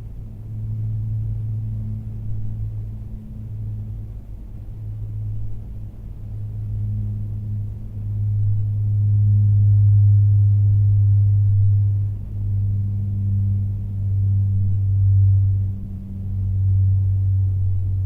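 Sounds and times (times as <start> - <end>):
distant propeller plane drone: 0.0 - 18.0.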